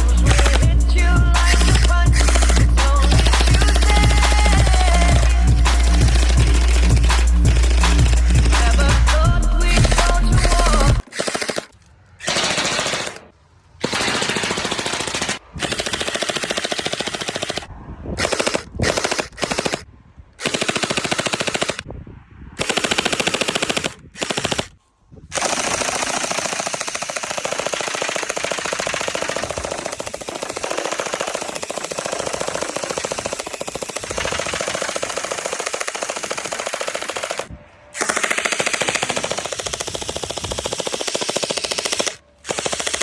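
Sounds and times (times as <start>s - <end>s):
gel blaster firing full auto: 0.0s - 21.9s, 22.6s - 43.0s.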